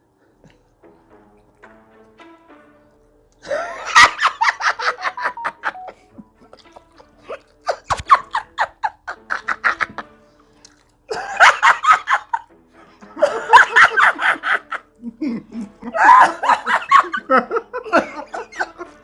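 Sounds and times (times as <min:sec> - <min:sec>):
soft background music: 0:00.0 - 0:19.0
person laughing: 0:03.4 - 0:10.1, 0:11.1 - 0:12.5, 0:13.2 - 0:19.0.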